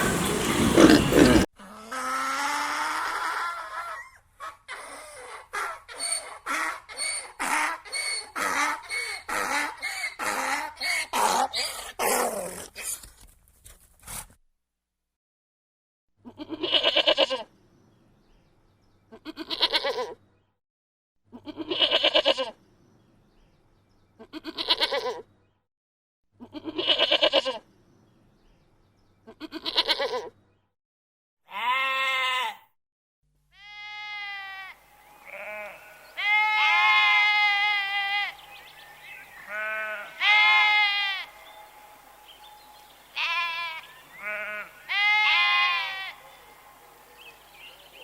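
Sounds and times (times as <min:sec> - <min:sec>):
goat or sheep bleating: 0:00.0 - 0:01.5, 0:16.3 - 0:17.4, 0:21.4 - 0:22.5, 0:24.2 - 0:25.2, 0:26.4 - 0:27.6, 0:29.3 - 0:30.3, 0:31.5 - 0:32.6, 0:33.6 - 0:42.0, 0:43.1 - 0:46.7.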